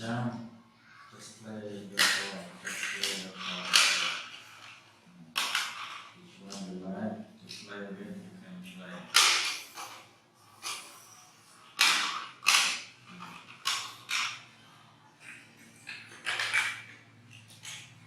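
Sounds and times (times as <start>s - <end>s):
toys clattering: 1.9s - 6.7s, 8.9s - 18.0s.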